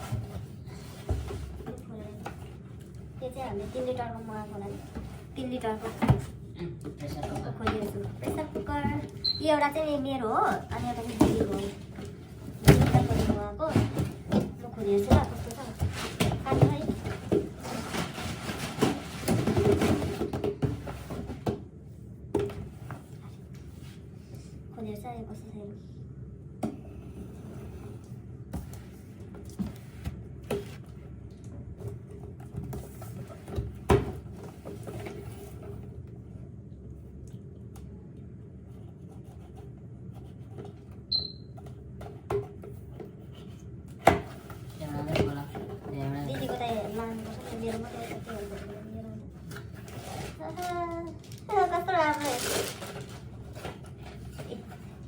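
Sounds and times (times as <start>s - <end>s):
cardboard packaging rustling: 49.4s - 55.0s.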